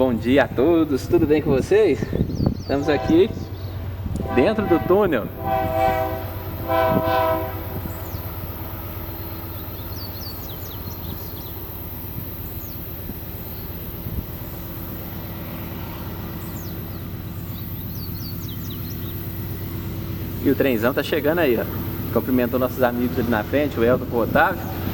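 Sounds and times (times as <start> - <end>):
train rumbling: 0.0 - 24.9
locomotive horn blast: 2.7 - 9.5.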